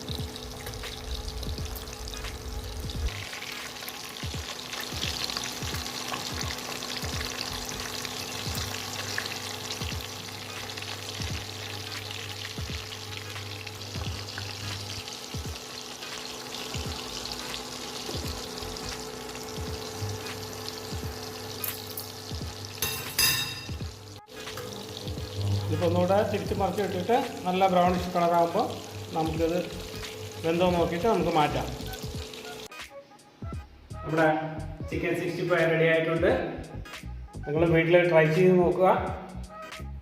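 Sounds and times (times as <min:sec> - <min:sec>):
chicken sizzling in hot oil: 0:00.0 - 0:32.8.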